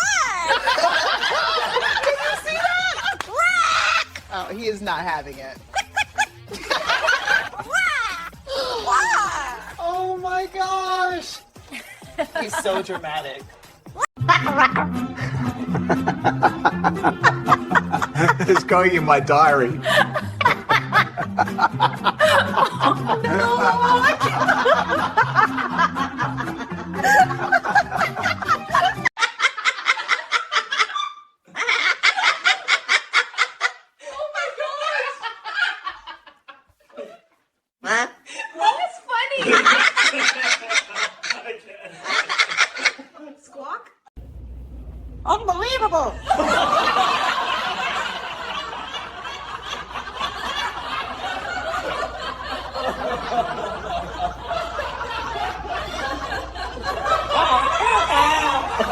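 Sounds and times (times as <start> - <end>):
background music: 0.0 - 29.2, 44.2 - 58.9
voice: 12.4 - 13.4, 18.2 - 20.0, 37.8 - 39.6, 45.3 - 46.4
rapid laughter: 14.2 - 36.3, 46.3 - 58.9.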